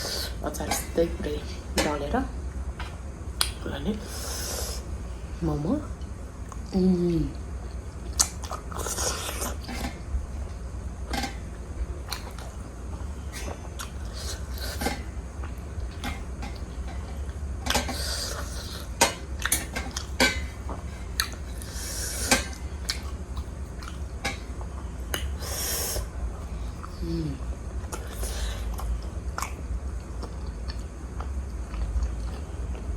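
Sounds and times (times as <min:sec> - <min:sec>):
steady low hum: 0:00.0 - 0:32.9
wet chewing and slurping: 0:08.1 - 0:10.0.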